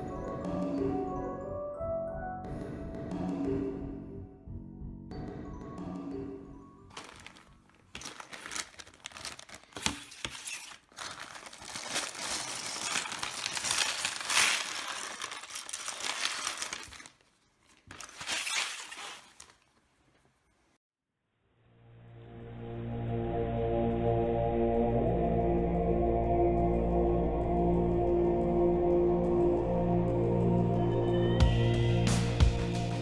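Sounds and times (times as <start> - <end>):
plastic pieces clattering: 6.9 - 19.8.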